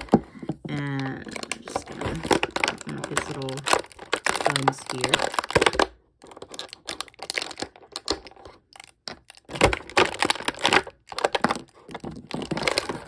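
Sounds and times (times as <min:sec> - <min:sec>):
plastic toys clicking and rattling: 0:00.0 - 0:13.0.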